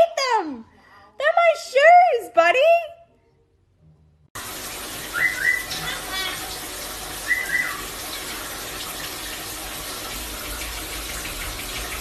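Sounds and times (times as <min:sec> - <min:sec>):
shower water running: 0:04.4 - 0:12.0
parrot whistle call: 0:05.1 - 0:06.0, 0:07.2 - 0:07.9.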